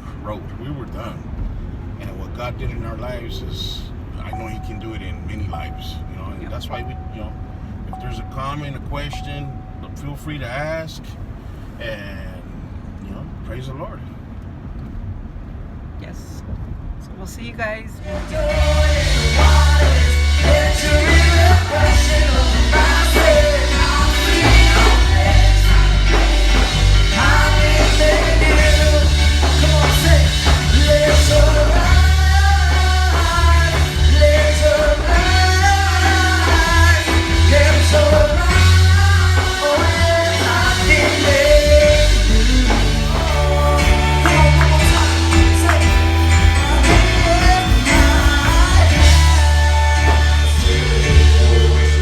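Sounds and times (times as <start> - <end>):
heavy bass line: 18.0 - 52.0
song with vocals and full band: 18.0 - 52.0.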